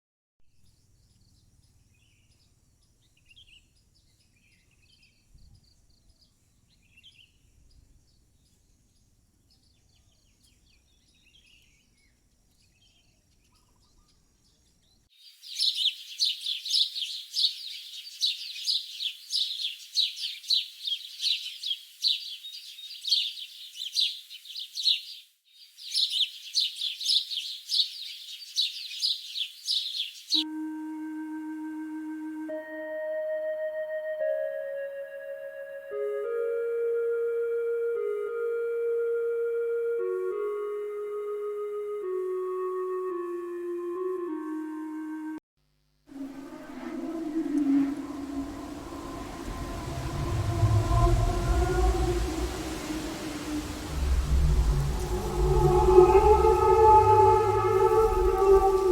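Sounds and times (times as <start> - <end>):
birds chirping: 15.2 - 30.4, 46.1 - 58.9.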